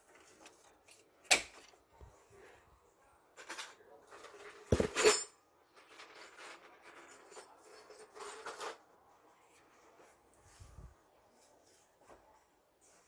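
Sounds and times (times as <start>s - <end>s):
hand tools and pipe parts clinking: 3.4s - 8.9s.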